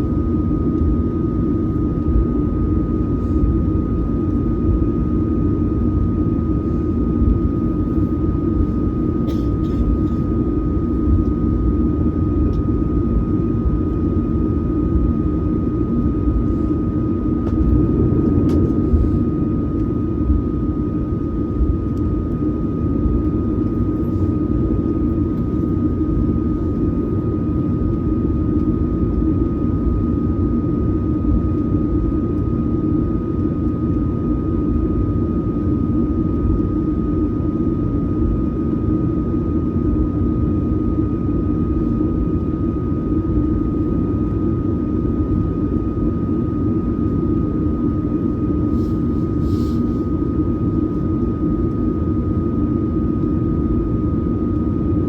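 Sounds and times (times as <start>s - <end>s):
jet engine roar in cabin: 0.0s - 55.0s
thin steady whine: 0.0s - 55.0s.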